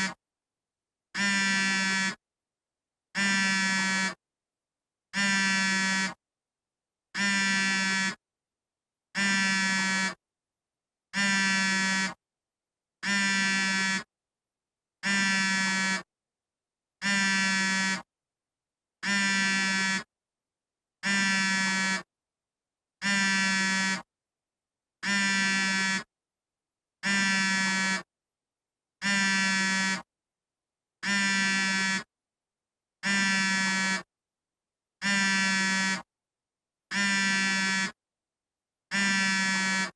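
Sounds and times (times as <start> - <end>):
phone vibrating buzz: 1.2 - 2.2, 3.2 - 4.2, 5.2 - 6.2, 7.2 - 8.2, 9.2 - 10.2, 11.2 - 12.2, 13.0 - 14.0, 15.0 - 16.1, 17.0 - 18.0, 19.0 - 20.0, 21.0 - 22.1, 23.0 - 24.1, 25.0 - 26.0, 27.0 - 28.1, 29.0 - 30.1, 31.0 - 32.0, 33.0 - 34.0, 35.0 - 36.0, 36.9 - 37.9, 38.9 - 39.9.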